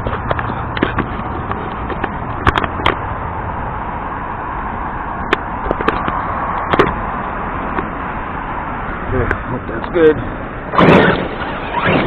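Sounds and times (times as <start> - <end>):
rc truck running: 10.7 - 12.0.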